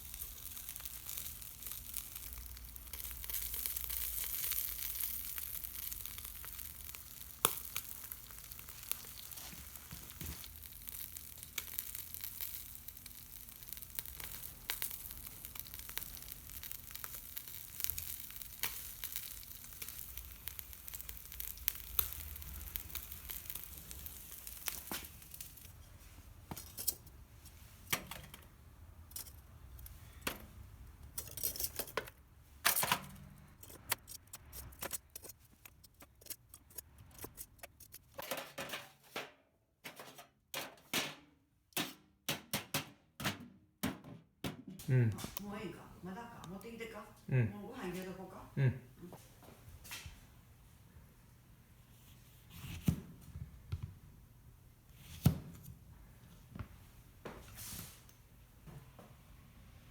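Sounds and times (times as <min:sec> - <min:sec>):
fish sizzling on a grill: 0:00.0 - 0:25.7, 0:44.9 - 0:48.3
charcoal crackles and pops: 0:00.0 - 0:39.2, 0:44.8 - 0:48.4.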